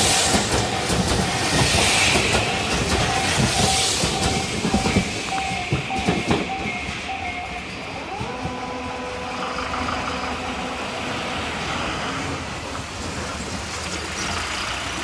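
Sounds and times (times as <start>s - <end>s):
train wheels knocking on rail joints: 0.0s - 8.6s
crossing warning bell ringing: 0.0s - 11.7s.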